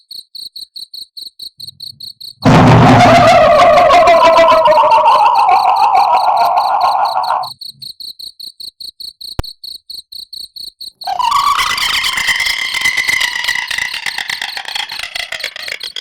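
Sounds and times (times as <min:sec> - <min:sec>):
woman wailing eerily: 0:02.5 - 0:07.5, 0:11.1 - 0:16.0
crickets chirping: 0:03.4 - 0:07.6.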